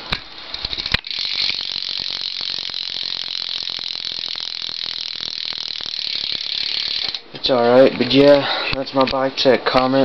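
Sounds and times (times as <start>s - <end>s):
bicycle freewheel clicking: 0.0s - 7.3s.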